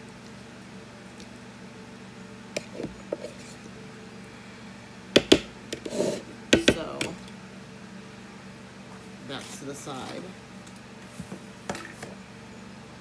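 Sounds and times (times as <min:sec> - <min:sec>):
scraping and rustling: 0:02.6 - 0:03.7
kitchenware clacking: 0:06.6 - 0:07.2.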